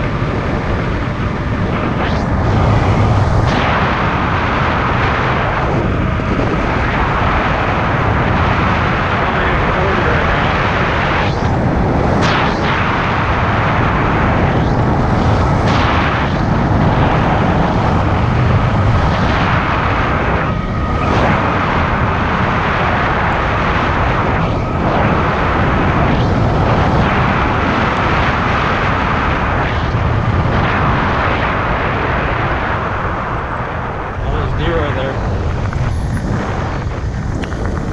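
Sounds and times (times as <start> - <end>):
faint steady whine: 0.0 - 37.9
tyre and road noise: 0.0 - 37.9
wind rushing over microphone: 0.0 - 37.9.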